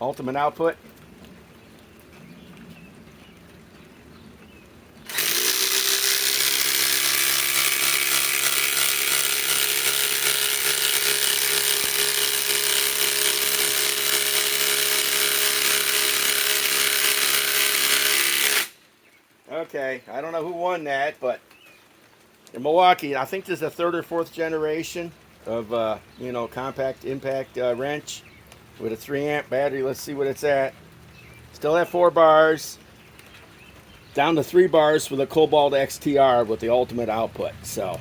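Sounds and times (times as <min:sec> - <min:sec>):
impact driver hammering: 0:05.1 - 0:18.8.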